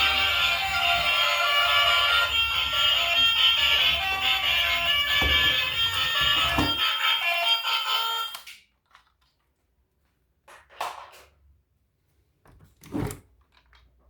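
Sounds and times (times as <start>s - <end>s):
electronic alarm tones: 0.0s - 7.2s
noisy knocks: 3.0s - 6.8s.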